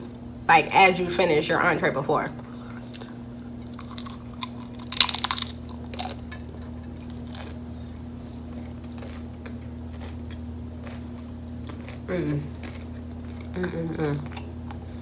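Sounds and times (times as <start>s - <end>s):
steady low hum: 0.0s - 15.0s
crunchy taco shell bite: 2.9s - 6.5s.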